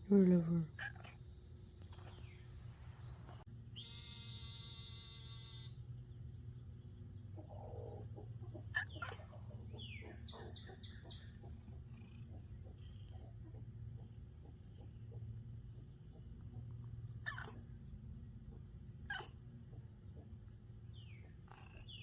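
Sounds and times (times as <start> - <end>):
chickens clucking: 7.3 - 15.3.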